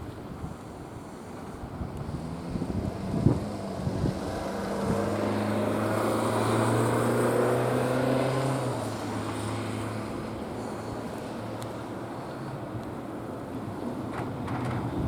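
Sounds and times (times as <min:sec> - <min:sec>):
vehicle engine droning past: 0:02.1 - 0:10.8.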